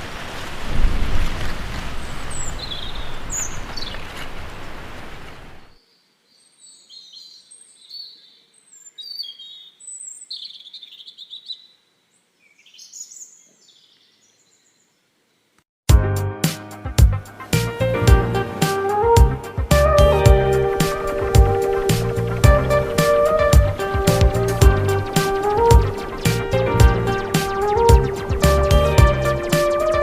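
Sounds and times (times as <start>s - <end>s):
small birds chirping: 1.9s - 15.6s, 19.7s - 30.0s
steady rushing noise: 17.4s - 30.0s.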